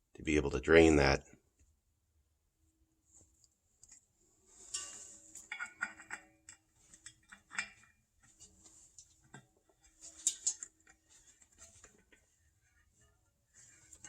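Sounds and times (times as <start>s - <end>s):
metal fittings clicking and tapping: 4.7s - 8.4s, 9.0s - 12.2s.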